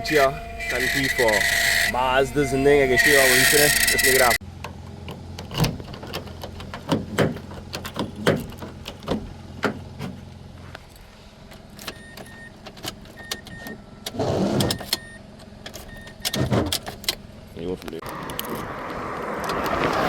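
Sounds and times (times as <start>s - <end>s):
short electronic beeps: 0.0s - 4.4s
car engine hum: 0.0s - 20.0s.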